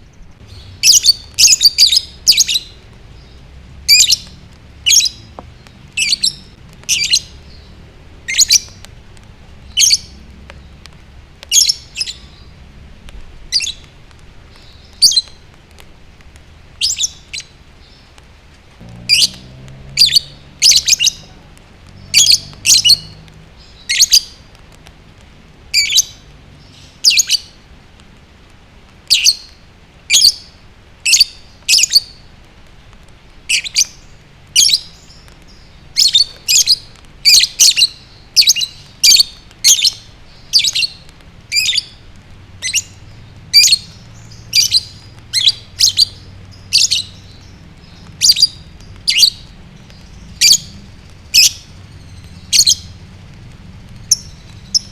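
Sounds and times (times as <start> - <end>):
lovebird chirping: 0.0 - 8.8, 9.6 - 10.7, 11.5 - 12.6, 16.8 - 18.1, 19.0 - 21.4, 22.0 - 24.4, 25.8 - 27.6, 33.5 - 42.0, 42.6 - 53.0, 54.0 - 54.9.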